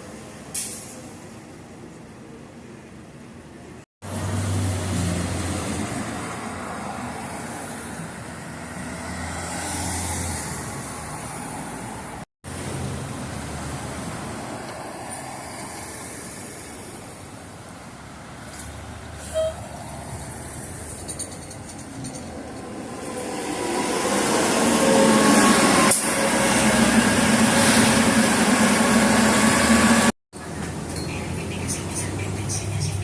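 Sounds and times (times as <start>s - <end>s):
street traffic: 0.0s - 33.0s
large vehicle engine humming: 29.8s - 33.0s.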